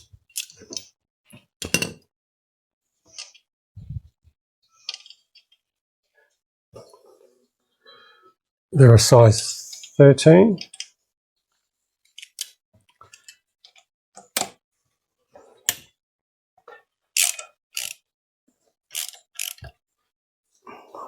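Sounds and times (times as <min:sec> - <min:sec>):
hand tools clicking on bolts: 0:17.2 - 0:18.0, 0:19.0 - 0:19.7.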